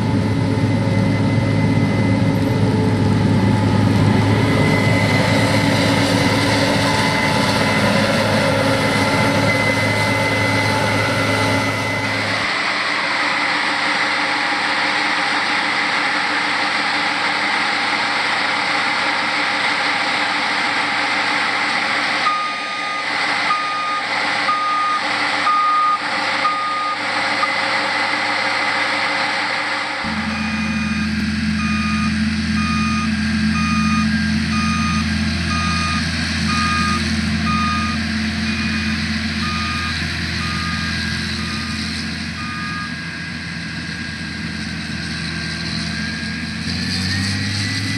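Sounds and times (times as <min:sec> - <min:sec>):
reversing alarm beeping: 0:00.0 - 0:12.5, 0:22.2 - 0:27.7, 0:30.0 - 0:47.9
heavy machinery engine running: 0:00.0 - 0:47.9.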